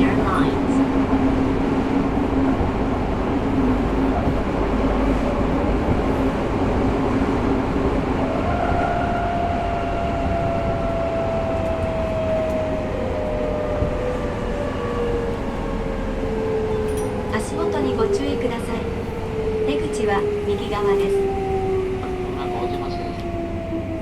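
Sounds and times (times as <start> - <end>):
subway train wheels and motors rumbling: 0.0 - 24.0.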